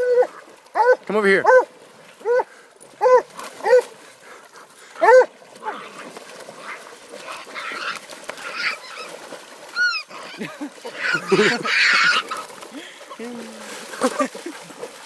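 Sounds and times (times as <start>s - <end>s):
dog barking: 0.1s - 3.8s, 5.0s - 5.3s.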